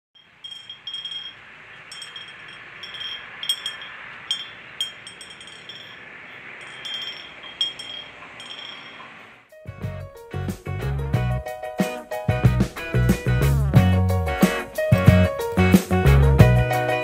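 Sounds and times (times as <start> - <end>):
bell clinking: 0.2 - 9.2.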